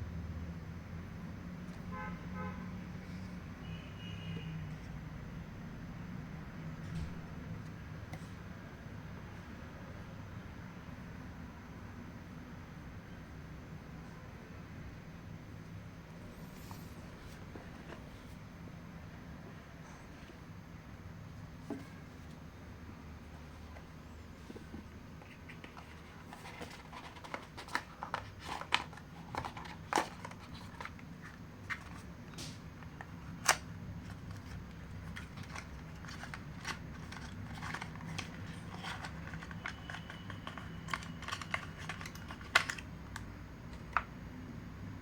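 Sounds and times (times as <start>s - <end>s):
low steady hum: 4.6s - 45.0s
cardboard and plastic rustling: 23.4s - 44.1s
clicks and taps of packaging: 31.7s - 44.1s.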